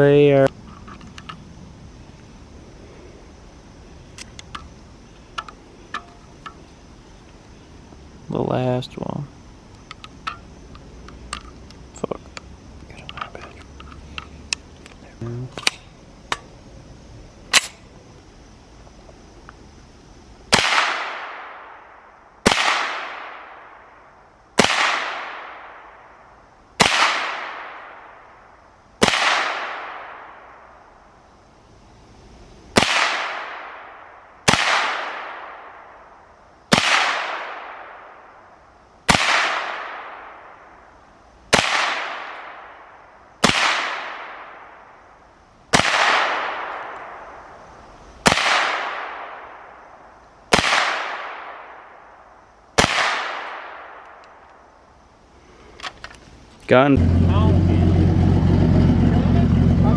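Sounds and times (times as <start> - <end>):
gunshots echoing: 20.5 - 23.8, 24.6 - 26.0, 26.8 - 28.2, 29.0 - 30.6, 32.8 - 35.9, 36.7 - 38.3, 39.1 - 40.7, 41.5 - 45.0, 45.7 - 47.5, 48.2 - 49.8, 50.5 - 52.0, 52.8 - 54.2.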